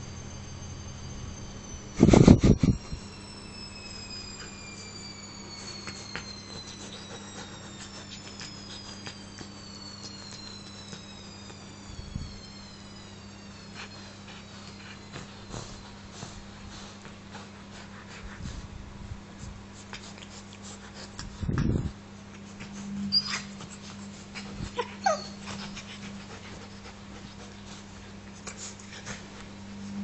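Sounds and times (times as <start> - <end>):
steady low hum: 0.0 - 30.0
dog whimpering: 2.3 - 17.1, 22.4 - 29.4.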